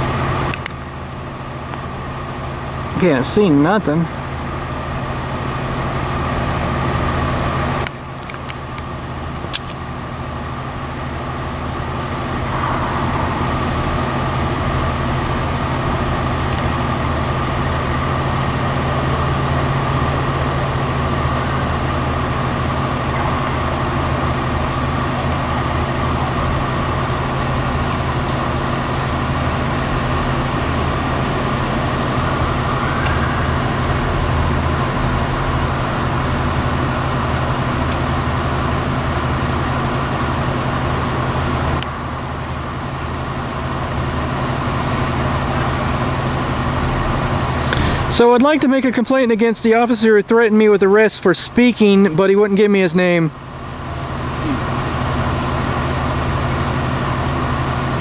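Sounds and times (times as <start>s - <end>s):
vehicle engine idling: 0.0s - 58.0s.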